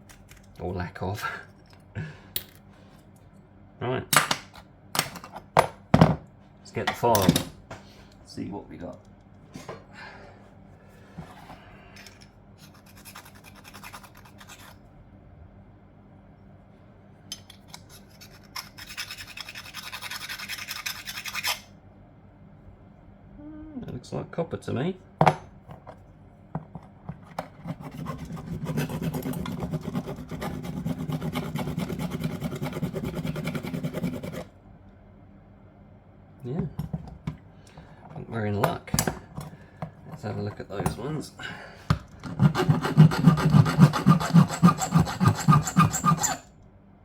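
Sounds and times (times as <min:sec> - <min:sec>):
file scraping metal: 0:12.6 - 0:14.8, 0:17.7 - 0:21.7, 0:27.4 - 0:34.5, 0:42.2 - 0:46.5.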